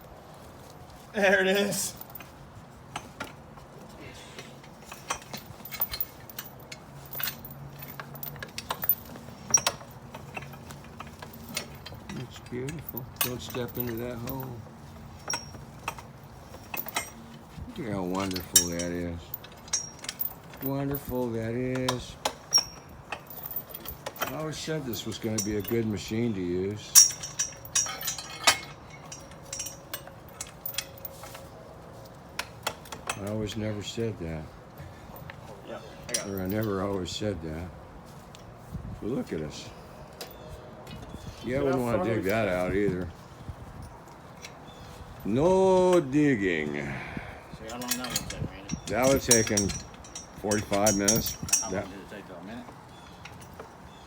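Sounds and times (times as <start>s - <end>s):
metallic clinks and knocks: 1.8s - 3.8s, 4.4s - 33.6s, 36.0s - 37.0s, 47.6s - 52.1s, 52.9s - 54.0s
metal clicks and clanks: 4.4s - 31.5s, 32.1s - 33.7s, 36.1s - 36.8s, 47.6s - 52.0s.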